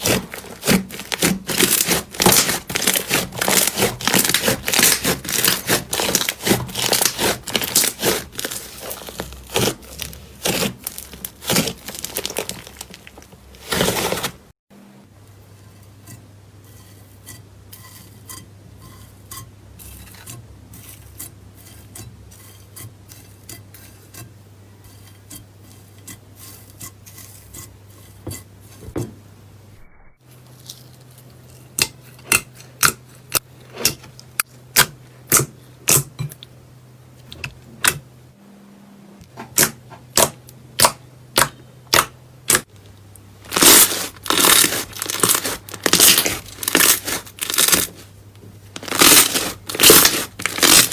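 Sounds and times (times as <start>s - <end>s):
crunchy crackling slime: 0.0s - 14.5s, 43.4s - 48.1s, 48.7s - 50.9s.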